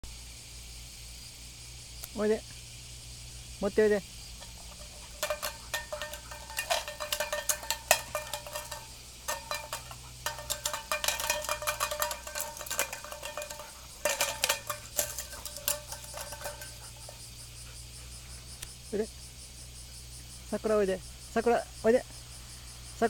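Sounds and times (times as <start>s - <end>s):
small metal bell jingling: 4.3s - 17.8s.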